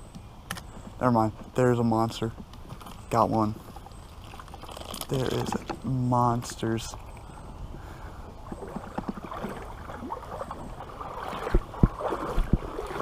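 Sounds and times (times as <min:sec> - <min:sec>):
creek water splashing: 0:03.1 - 0:13.0.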